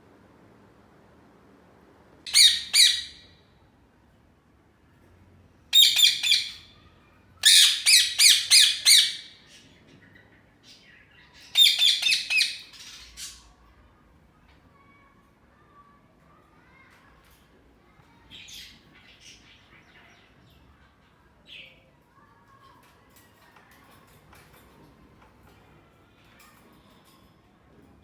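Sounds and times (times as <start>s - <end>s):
parakeets screeching: 2.3s - 3.3s, 5.8s - 6.7s, 7.4s - 9.7s, 11.4s - 13.4s.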